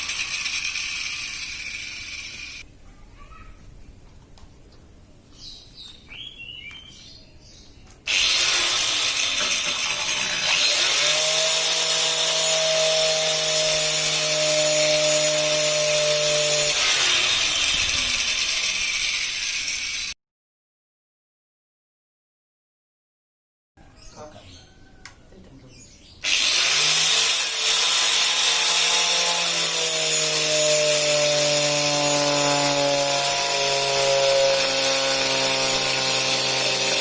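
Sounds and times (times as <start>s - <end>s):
saw blade cutting wood: 0.0s - 2.6s, 8.1s - 20.2s, 26.2s - 37.0s
table saw whirring: 0.0s - 2.6s, 8.1s - 20.2s, 26.2s - 37.0s.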